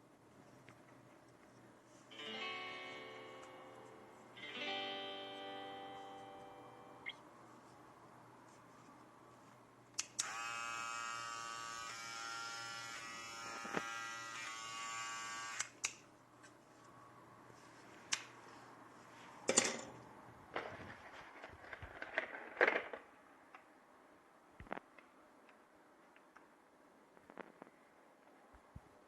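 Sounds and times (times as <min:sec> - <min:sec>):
hair trimmer buzzing: 0:10.2 - 0:15.8.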